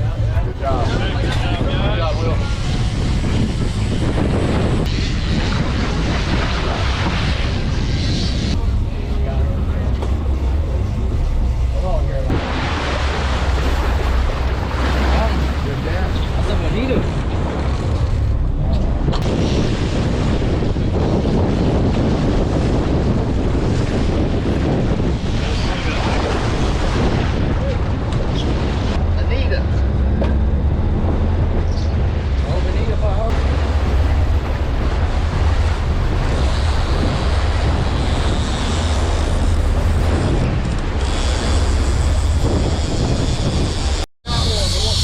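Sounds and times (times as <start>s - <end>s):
sea water washing around boat: 0.0s - 45.0s
wind buffeting microphone: 0.0s - 45.0s.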